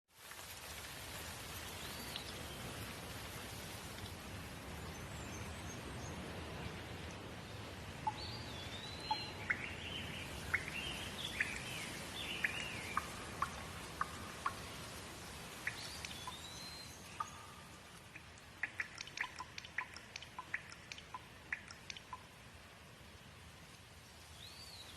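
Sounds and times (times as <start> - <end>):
steady rain hiss: 0.1 - 24.9
water dripping: 0.2 - 22.8
birds chirping: 7.9 - 22.3.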